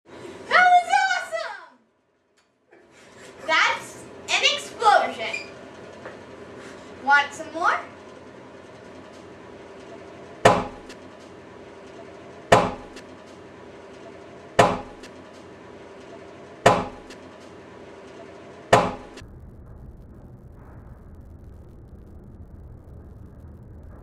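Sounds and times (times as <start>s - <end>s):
gas igniting with sharp bangs: 10.4s - 11.0s, 12.4s - 13.1s, 14.6s - 15.2s, 16.6s - 17.2s, 18.6s - 24.0s.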